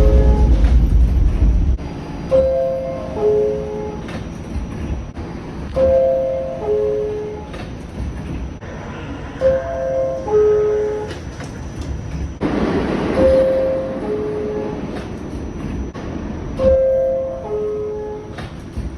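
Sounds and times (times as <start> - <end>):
low train rumble: 0.0 - 18.9
two-note door chime: 2.3 - 4.0, 5.8 - 7.5, 16.6 - 18.4.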